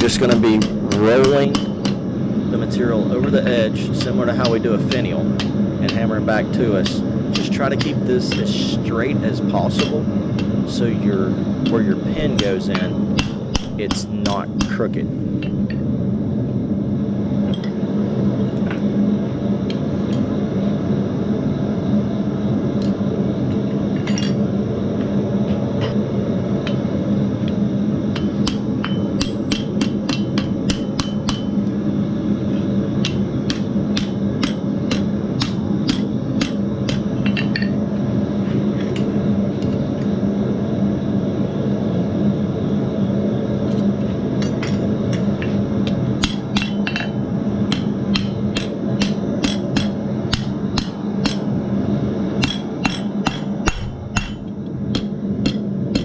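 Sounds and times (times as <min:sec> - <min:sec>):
hammer striking steel on anvil: 0:00.0 - 0:02.0, 0:03.2 - 0:08.8, 0:09.4 - 0:10.6, 0:11.6 - 0:15.7, 0:28.2 - 0:31.6, 0:33.0 - 0:37.8, 0:46.2 - 0:51.5, 0:52.4 - 0:56.0
low hum: 0:00.0 - 0:56.0.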